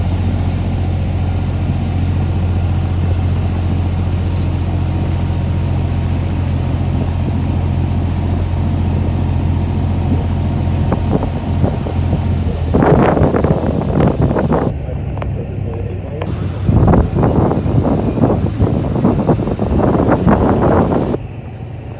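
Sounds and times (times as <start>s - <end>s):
people's voices: 6.2s - 21.2s.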